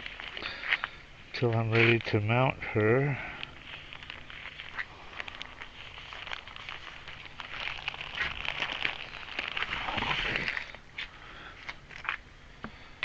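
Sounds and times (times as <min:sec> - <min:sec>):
plastic bag crinkling: 0:00.0 - 0:01.0, 0:03.3 - 0:12.2.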